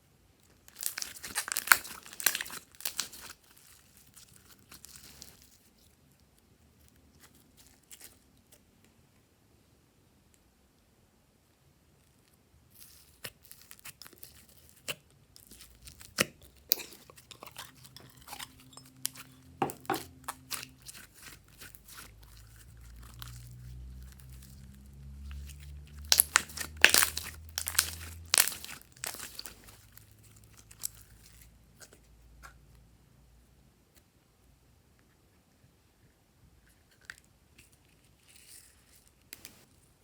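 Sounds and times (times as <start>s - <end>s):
slime clicking and popping: 0.7s - 3.3s, 25.2s - 29.9s.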